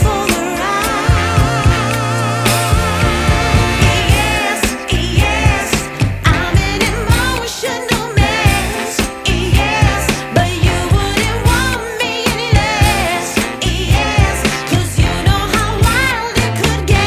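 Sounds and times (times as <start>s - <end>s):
steady beat: 0.0s - 7.4s
person singing with vibrato: 0.0s - 17.0s.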